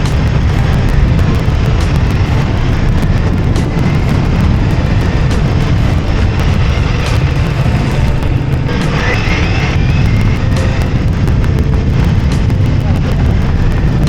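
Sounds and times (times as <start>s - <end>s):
faint whine: 0.0s - 14.0s
motorcycle engine rumble: 0.0s - 14.0s
wind and road noise: 0.0s - 14.0s.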